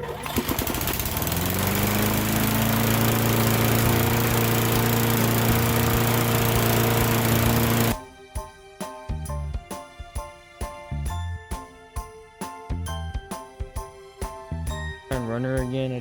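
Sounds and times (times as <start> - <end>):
lawn mower engine starting: 0.0 - 8.0.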